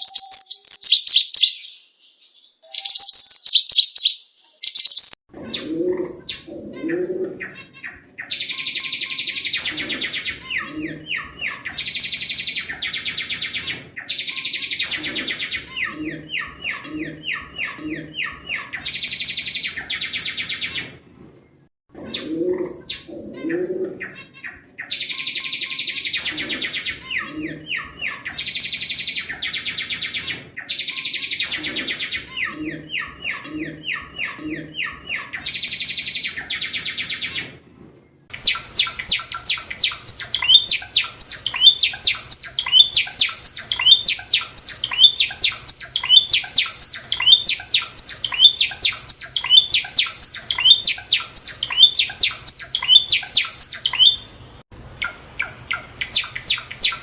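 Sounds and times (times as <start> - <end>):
bird sharp repeated notes: 0.0 - 7.1, 24.8 - 37.2, 38.3 - 54.3, 55.0 - 57.0
bird buzzy trills and chirps: 0.0 - 20.9, 22.1 - 37.4, 38.3 - 54.4, 55.0 - 57.0.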